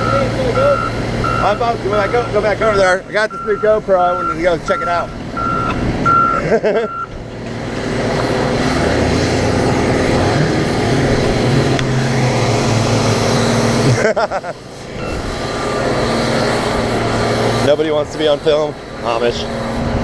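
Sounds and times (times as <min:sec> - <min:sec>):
vehicle reversing alarm beeping: 0:00.0 - 0:07.2, 0:15.0 - 0:15.3
vehicle engine running: 0:00.0 - 0:20.0.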